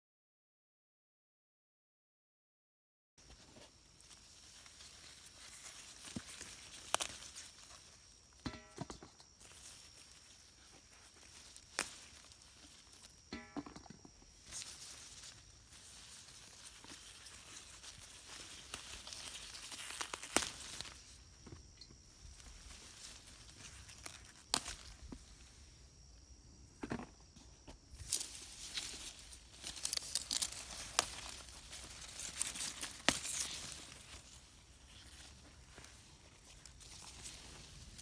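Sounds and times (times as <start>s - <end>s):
rustling foliage: 3.2s - 26.1s, 27.4s - 38.0s
stems snapping: 5.1s - 10.2s, 10.8s - 15.4s, 16.1s - 21.0s, 22.4s - 25.2s, 28.0s - 34.3s.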